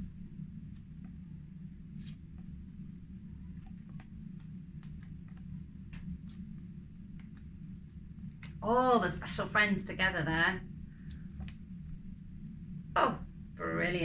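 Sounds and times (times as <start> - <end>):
soft rustles and clicks: 0.0 - 9.5, 10.1 - 13.0
low hum: 4.2 - 14.0.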